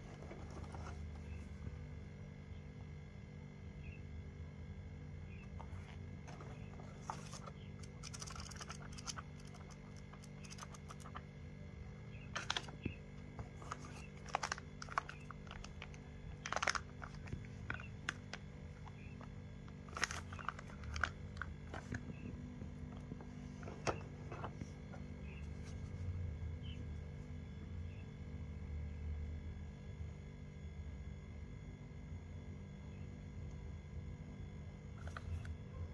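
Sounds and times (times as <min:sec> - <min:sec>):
steady low hum: 0:00.0 - 0:35.9
packaging clicks and crinkling: 0:05.6 - 0:11.3, 0:12.3 - 0:23.1.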